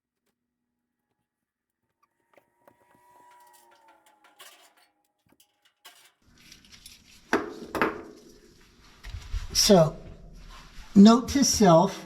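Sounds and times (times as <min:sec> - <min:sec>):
hand tools clinking on metal: 0:03.3 - 0:08.6.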